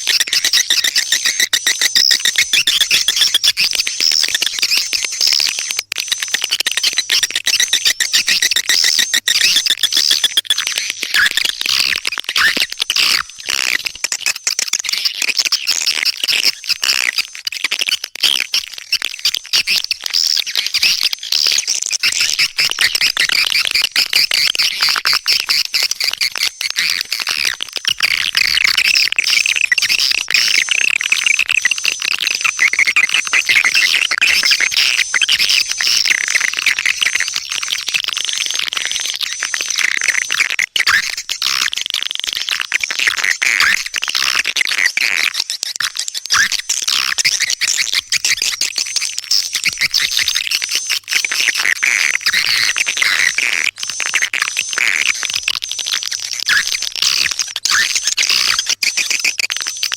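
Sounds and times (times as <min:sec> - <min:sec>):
swiftlet chirps and twitters: 0:00.1 - 0:13.8.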